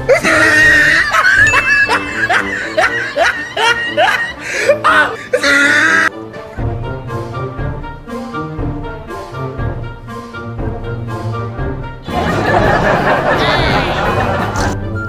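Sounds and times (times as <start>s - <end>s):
background music: 0.0s - 15.0s
yelping laughs: 0.1s - 6.1s, 12.1s - 14.8s.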